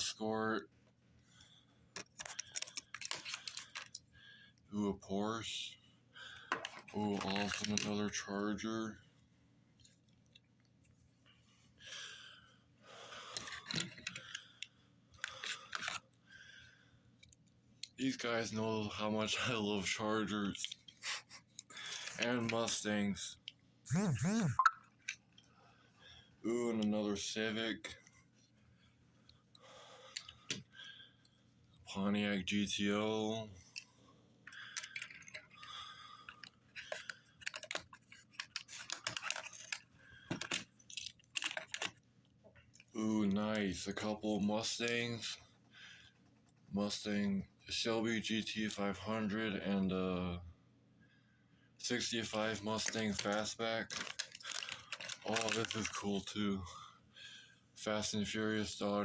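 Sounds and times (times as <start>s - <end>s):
packaging rustling: 2.0s - 4.0s, 6.6s - 7.9s, 36.3s - 42.0s, 52.7s - 56.1s
toy cars clicking and tapping: 36.4s - 41.9s.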